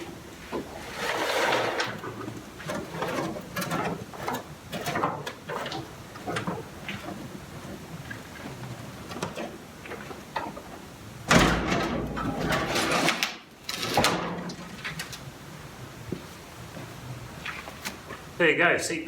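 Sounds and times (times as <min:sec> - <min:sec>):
seat box scraping and clanking: 0:00.5 - 0:05.9.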